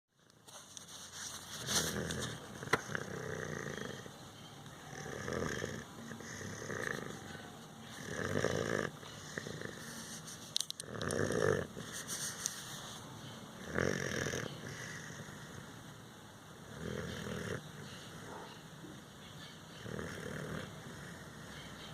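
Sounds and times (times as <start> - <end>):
slow soft snores: 1.7 - 4.1, 4.9 - 11.9, 13.6 - 15.6, 19.8 - 21.4.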